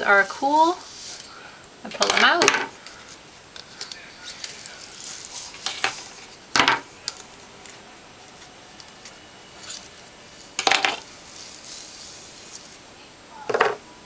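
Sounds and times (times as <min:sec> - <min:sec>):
hair rollers clattering: 0:01.9 - 0:03.0, 0:08.8 - 0:11.1.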